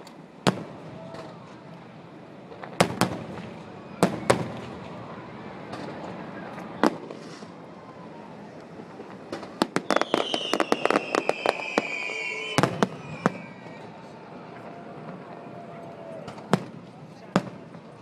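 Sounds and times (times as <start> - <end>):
firework bangs: 0.4 - 1.5, 2.5 - 15.4, 16.2 - 18.0
crackling firework pops: 2.5 - 5.1, 5.7 - 7.6, 8.6 - 13.8
firework whistle falling: 9.6 - 14.7.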